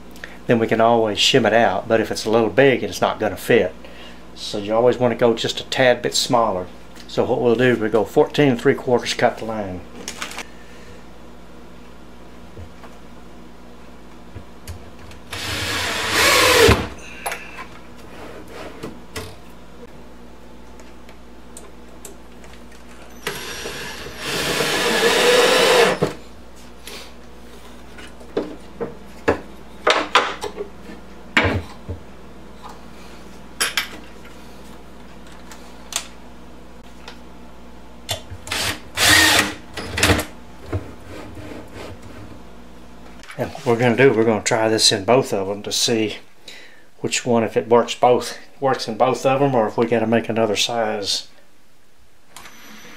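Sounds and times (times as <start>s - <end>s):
power saw cutting wood: 23.3s - 26.0s, 38.6s - 39.6s.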